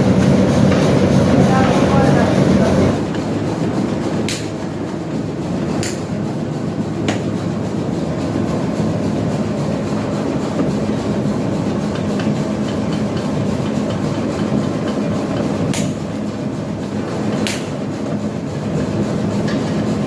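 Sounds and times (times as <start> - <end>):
workshop machinery humming: 0.0 - 20.0
sharp metal knocks: 15.7 - 16.1.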